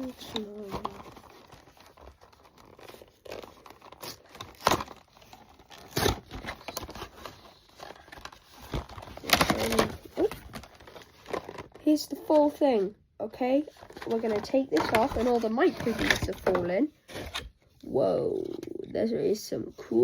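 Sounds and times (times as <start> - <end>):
packaging tearing and crinkling: 0.0 - 11.8.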